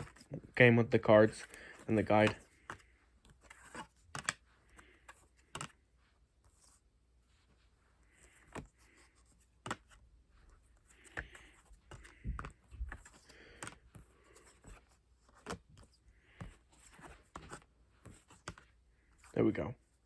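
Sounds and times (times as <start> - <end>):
soft packaging rustling: 0.0 - 20.0
cards and cardboard clicking: 1.3 - 5.8, 8.3 - 10.0, 10.9 - 18.8.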